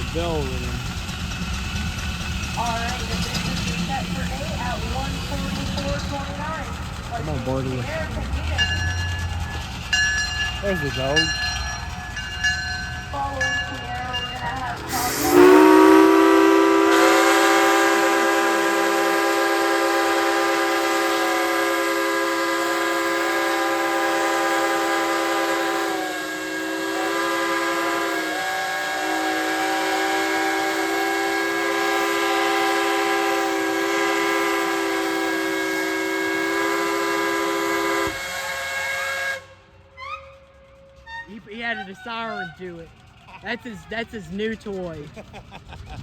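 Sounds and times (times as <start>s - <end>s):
steam whistles blowing a chord: 14.9s - 42.7s.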